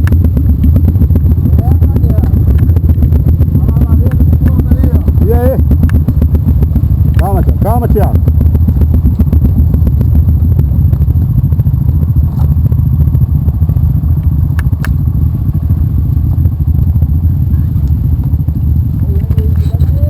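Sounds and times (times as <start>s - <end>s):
motorcycle engine running: 0.0s - 20.0s
sharp clicks: 2.2s - 3.1s, 4.0s - 7.7s, 14.1s - 15.0s.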